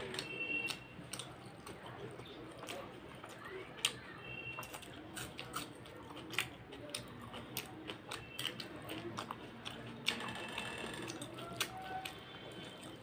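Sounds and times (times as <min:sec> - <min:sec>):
close chewing with mouth clicks: 0:00.0 - 0:13.0.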